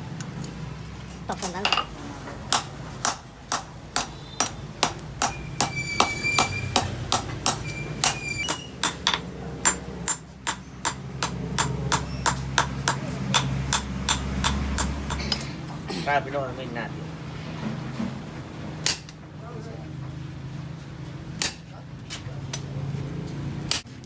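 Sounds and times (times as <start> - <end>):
hammer blows on steel: 2.5 - 15.4.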